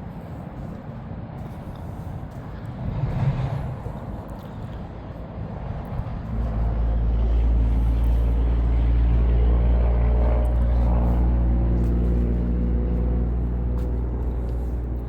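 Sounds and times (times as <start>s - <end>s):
engine droning: 0.0s - 15.0s.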